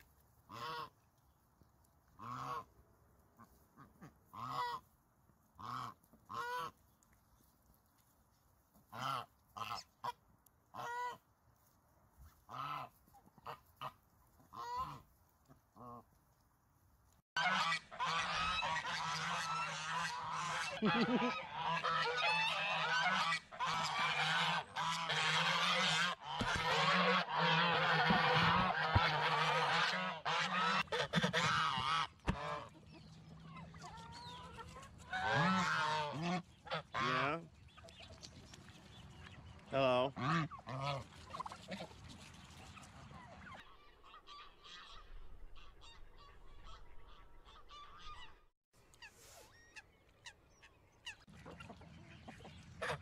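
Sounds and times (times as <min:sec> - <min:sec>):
geese honking: 0:00.5 - 0:00.9, 0:02.2 - 0:02.7, 0:03.4 - 0:04.9, 0:05.6 - 0:06.8, 0:12.5 - 0:15.0, 0:17.4 - 0:37.5, 0:43.1 - 0:53.0
goslings peeping: 0:00.5 - 0:01.1, 0:02.1 - 0:04.9, 0:05.5 - 0:06.8, 0:08.8 - 0:11.2, 0:12.5 - 0:16.1, 0:17.4 - 0:53.0.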